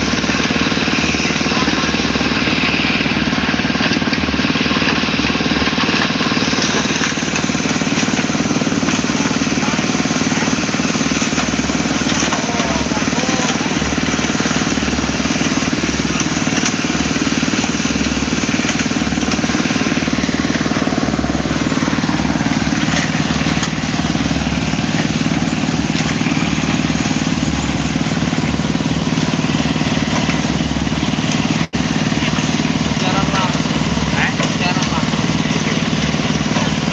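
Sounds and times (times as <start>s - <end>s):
concrete mixer engine running: 0.0s - 36.9s.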